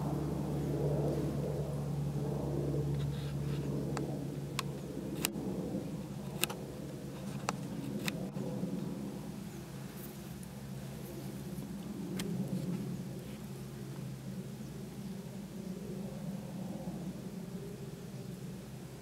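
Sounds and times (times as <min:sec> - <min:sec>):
low engine hum: 0:00.0 - 0:19.0
sharp clicks: 0:06.3 - 0:06.6.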